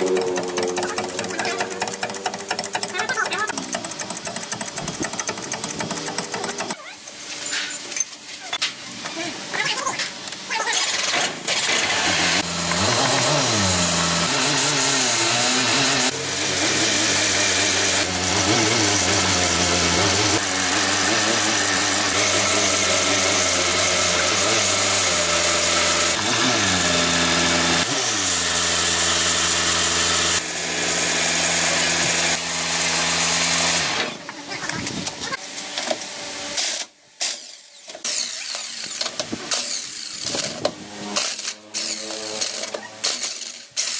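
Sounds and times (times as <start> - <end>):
vehicle engine revving: 11.8 - 22.4.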